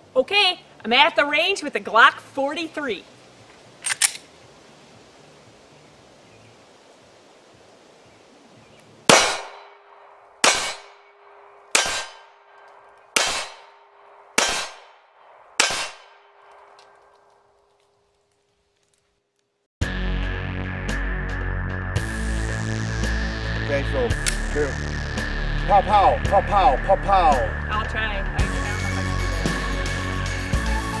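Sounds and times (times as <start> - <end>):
pistol shots: 9.1 - 12.4, 13.2 - 16.7.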